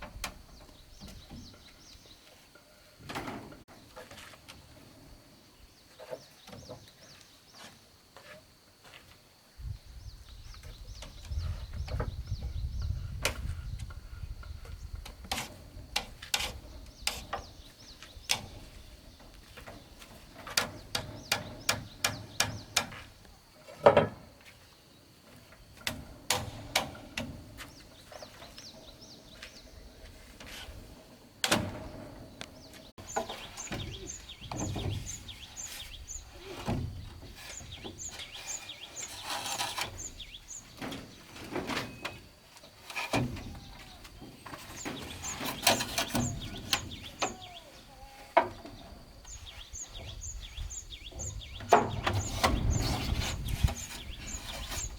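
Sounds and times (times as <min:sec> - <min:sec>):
bird chirping: 0:16.4 - 0:23.0, 0:32.2 - 0:42.3, 0:43.4 - 0:54.9
knocks on bamboo and wood: 0:20.4 - 0:23.0, 0:23.8 - 0:24.3, 0:33.1 - 0:35.2.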